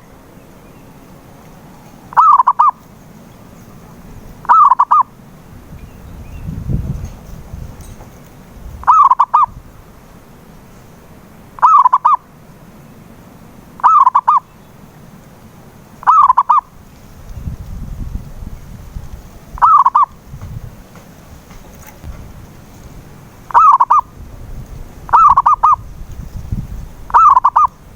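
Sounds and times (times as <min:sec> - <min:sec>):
dove cooing: 0:01.6 - 0:03.8, 0:04.4 - 0:05.2, 0:08.8 - 0:09.6, 0:11.6 - 0:12.3, 0:13.8 - 0:14.5, 0:16.0 - 0:16.8, 0:19.3 - 0:20.2, 0:23.4 - 0:24.2, 0:25.0 - 0:25.9, 0:27.1 - 0:27.9.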